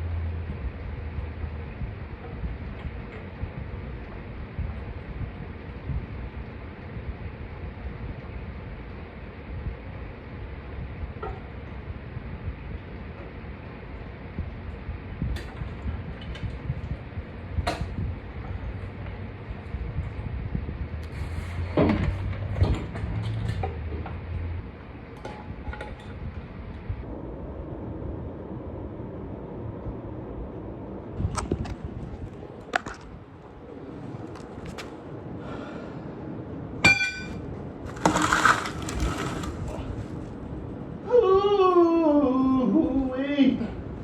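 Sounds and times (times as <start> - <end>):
low hum: 0.0 - 42.7
sharp ringing metallic strike: 36.8 - 37.4
hand tools clanking on metal: 36.8 - 39.6
metal clatter: 36.8 - 39.7.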